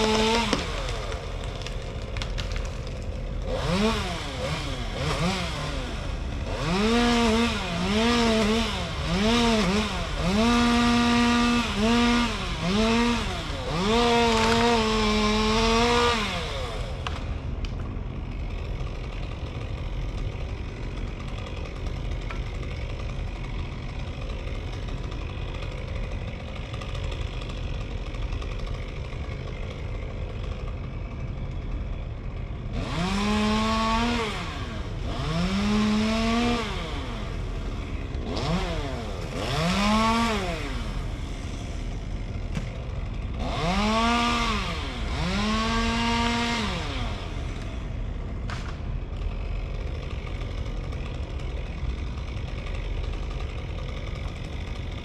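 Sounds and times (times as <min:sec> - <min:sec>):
chainsaw revving: 0:00.0 - 0:55.0.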